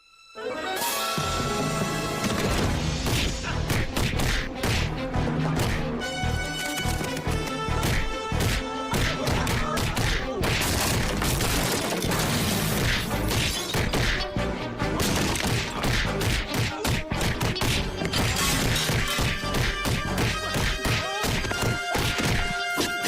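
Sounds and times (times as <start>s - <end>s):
dramatic action music: 0.4s - 23.0s
thuds of blows: 15.0s - 23.0s
glass breaking: 17.8s - 19.4s.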